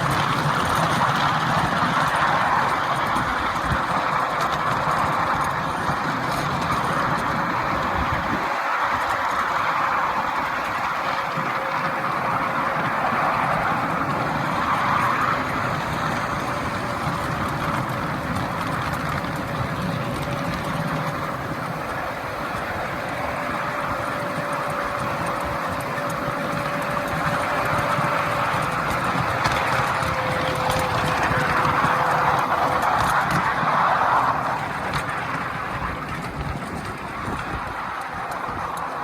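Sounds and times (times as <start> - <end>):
faint steady whine: 0.0 - 39.0
train running on track: 0.0 - 39.0.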